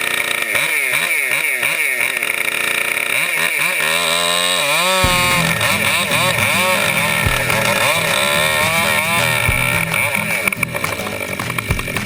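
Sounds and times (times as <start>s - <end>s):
chainsaw revving: 0.0s - 12.0s
rough low machine sound: 4.8s - 12.0s
short thumps: 5.0s - 7.9s, 8.6s - 12.0s.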